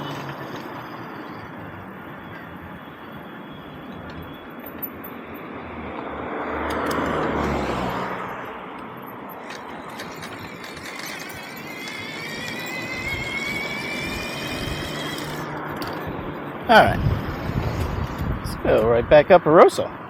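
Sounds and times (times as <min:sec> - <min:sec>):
road and wind noise: 0:00.0 - 0:20.0
motor vehicle passing: 0:03.9 - 0:18.8
high squeal: 0:09.4 - 0:18.2.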